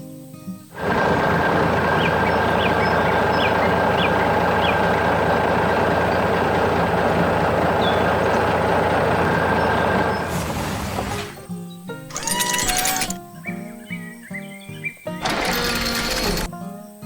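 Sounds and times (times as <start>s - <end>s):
vehicle engine and traffic: 0.8s - 11.5s, 12.1s - 13.2s, 15.2s - 16.5s.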